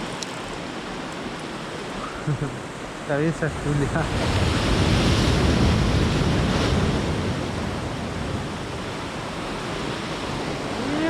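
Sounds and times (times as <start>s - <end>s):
sea surf washing: 0.0s - 11.0s
wind buffeting microphone: 3.4s - 11.0s.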